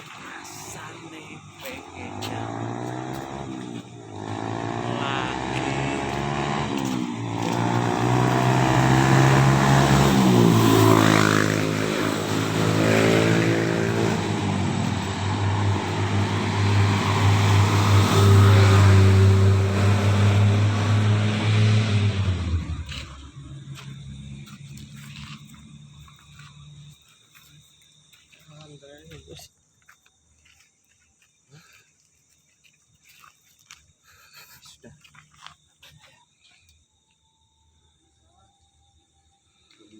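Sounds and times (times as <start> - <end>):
vehicle engine revving: 0.0 - 27.0.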